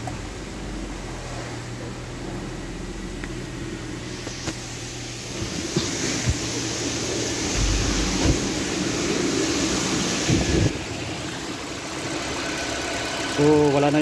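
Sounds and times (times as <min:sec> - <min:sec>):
car engine idling: 0:00.0 - 0:14.0
loud hiss: 0:04.0 - 0:11.3.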